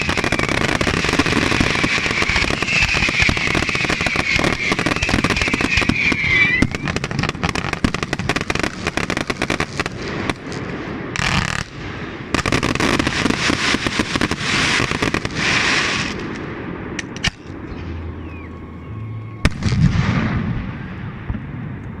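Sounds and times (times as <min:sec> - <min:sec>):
fireworks hissing bursts: 0:00.0 - 0:16.5
fireworks crackling: 0:00.0 - 0:22.0.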